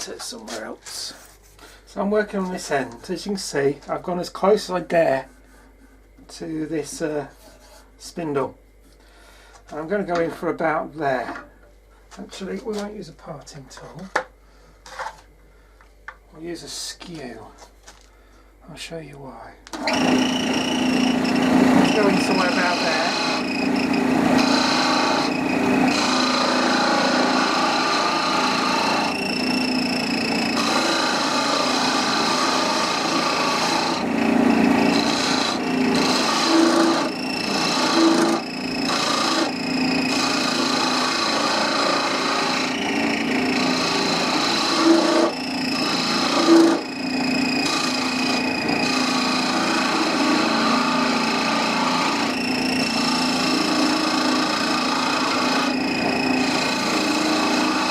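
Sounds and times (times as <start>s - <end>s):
lathe motor hum: 19.8s - 57.9s
chisel rasping on spinning wood: 19.9s - 57.9s.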